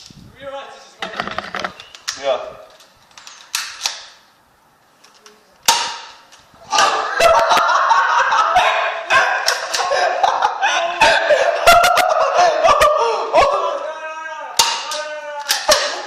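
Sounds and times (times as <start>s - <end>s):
bb guns cracking: 3.1s - 4.2s, 5.6s - 6.4s, 14.6s - 16.0s
people yelling and yelping: 6.6s - 16.0s.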